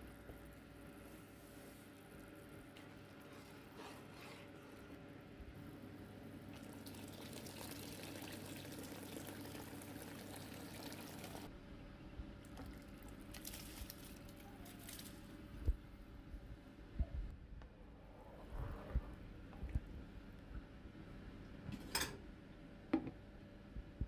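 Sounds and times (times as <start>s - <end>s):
water running in kitchen: 6.4s - 11.5s, 12.5s - 15.4s
steady low hum: 11.5s - 24.0s.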